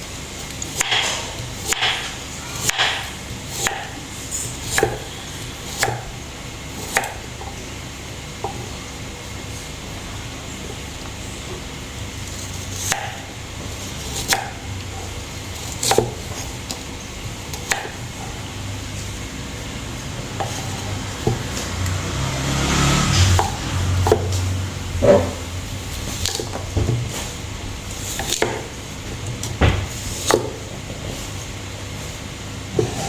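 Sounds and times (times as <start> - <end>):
steady low hum: 0.0 - 33.0
knife cutting on cutting board: 0.7 - 6.2, 12.4 - 16.8, 20.4 - 21.8, 22.5 - 28.7.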